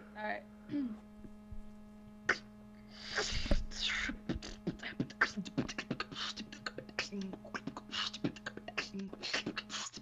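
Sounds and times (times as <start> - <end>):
beatboxing: 2.2 - 10.0.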